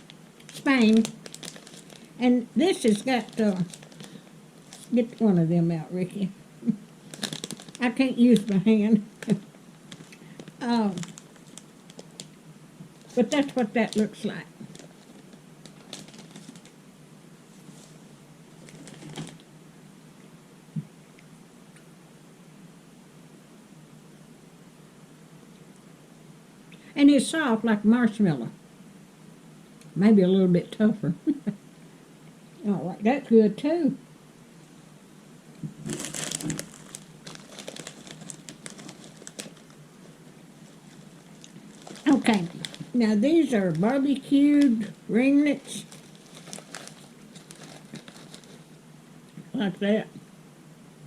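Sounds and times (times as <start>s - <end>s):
clicks and crackles of eating snack: 0.0s - 2.2s, 2.8s - 4.9s, 7.0s - 8.6s, 9.2s - 16.8s, 18.6s - 19.5s, 35.6s - 43.0s, 45.6s - 48.7s
plastic packaging crinkling: 0.0s - 5.4s, 7.0s - 16.8s, 17.6s - 19.4s, 35.6s - 48.8s.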